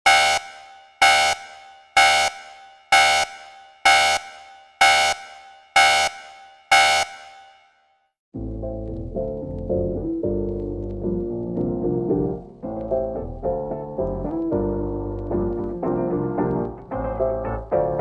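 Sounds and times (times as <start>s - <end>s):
loud horn blasts with echo: 0.1s - 7.5s
music: 8.4s - 18.0s.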